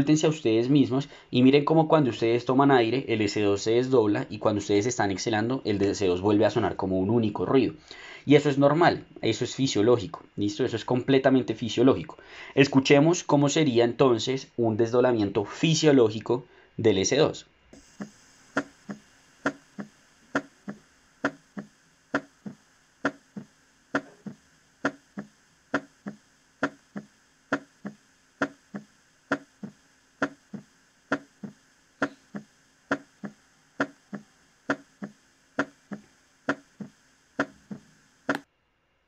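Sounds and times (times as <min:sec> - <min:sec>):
heartbeat lub-dub: 0:17.8 - 0:38.4.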